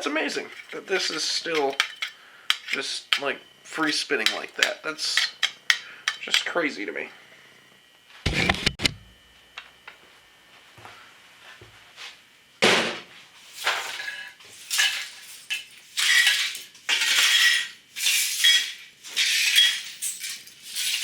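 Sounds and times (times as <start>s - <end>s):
metal and plastic fragments clinking: 0.5s - 2.9s, 13.6s - 21.0s.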